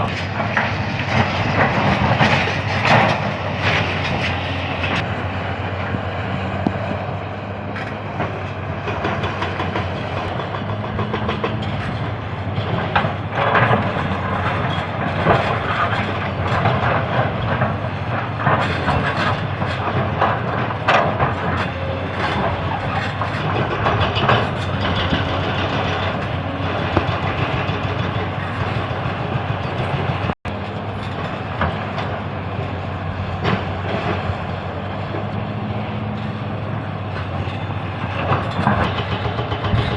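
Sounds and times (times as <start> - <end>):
excavator diesel engine running: 0.0 - 39.9
metallic clattering and knocking: 36.2 - 39.9.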